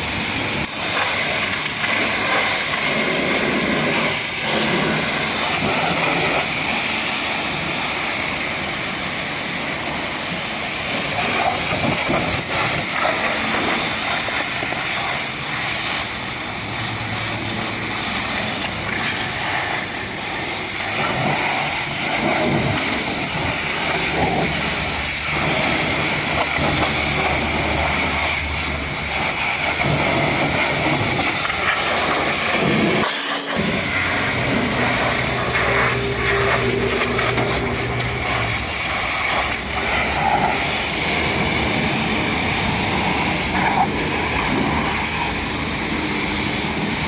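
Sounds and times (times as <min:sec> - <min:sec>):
pressure washer spraying water: 0:00.0 - 0:47.0
low hum: 0:31.9 - 0:43.2.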